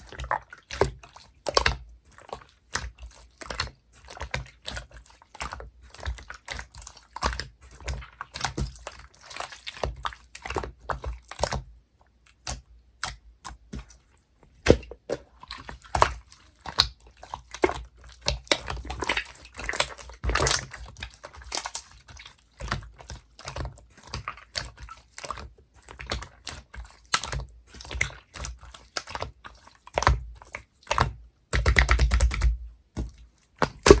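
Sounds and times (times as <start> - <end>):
sticky slime clicks and pops: 33.6 - 34.0.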